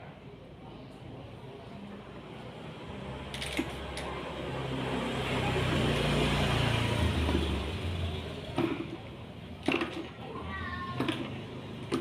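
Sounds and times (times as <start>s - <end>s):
small two-stroke engine revving: 3.7s - 8.6s.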